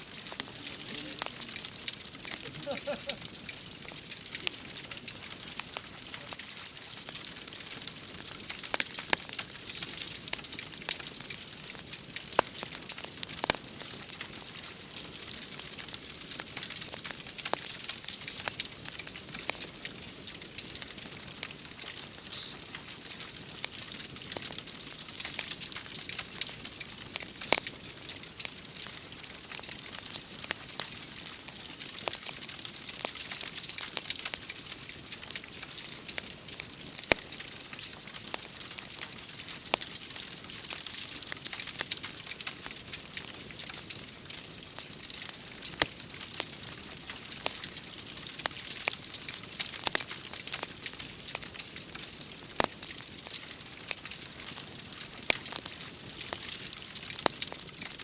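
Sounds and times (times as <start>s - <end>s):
steady hiss: 0.0s - 7.2s
wood fire crackling: 0.0s - 58.0s.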